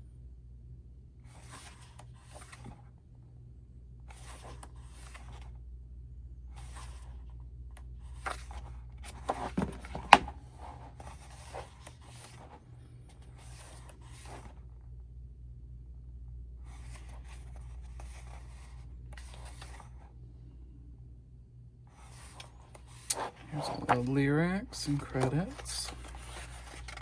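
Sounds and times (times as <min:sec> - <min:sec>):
steady low hum: 0:00.0 - 0:27.0
pages turning: 0:01.3 - 0:02.8, 0:04.1 - 0:05.5, 0:06.5 - 0:07.2, 0:08.1 - 0:14.6, 0:16.7 - 0:20.1, 0:22.0 - 0:27.0.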